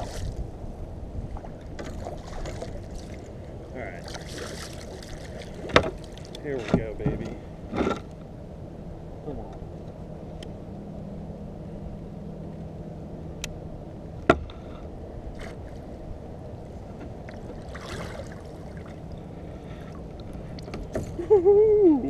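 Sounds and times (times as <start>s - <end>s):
low steady hum: 0.0s - 22.0s
water noise: 0.0s - 22.0s
wind: 0.0s - 22.0s.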